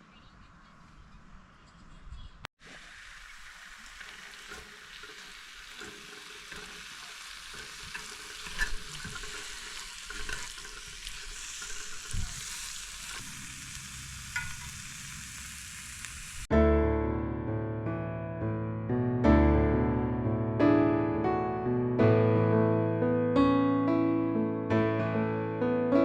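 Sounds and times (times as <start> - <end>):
food sizzling in a pan: 2.6 - 16.5.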